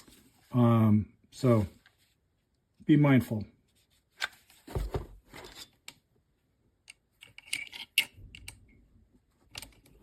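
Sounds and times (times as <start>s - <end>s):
angle grinder parts clicking and rattling: 7.2s - 8.6s.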